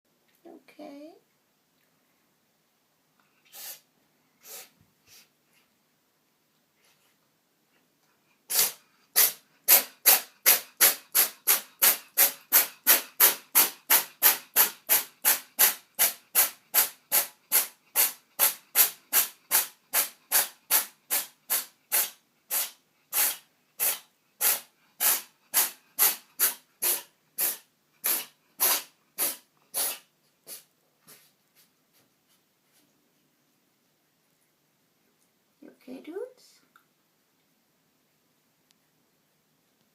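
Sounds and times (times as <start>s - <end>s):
cat sneezing: 3.4s - 5.2s, 8.5s - 31.2s.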